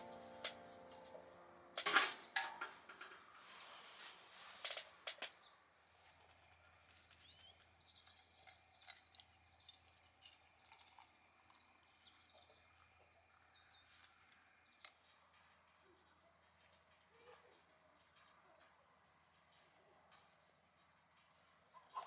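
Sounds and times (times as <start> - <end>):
faint high chirps: 0.0 - 2.4.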